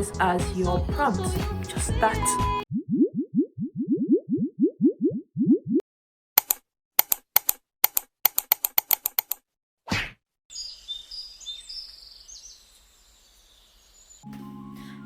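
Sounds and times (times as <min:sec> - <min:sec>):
high bird chirps: 0:10.5 - 0:15.0.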